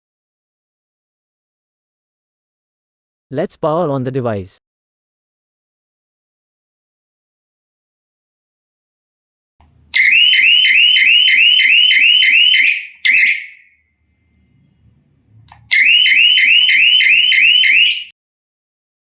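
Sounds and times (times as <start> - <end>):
warbling alarm siren: 9.9 - 14.0, 15.7 - 18.1.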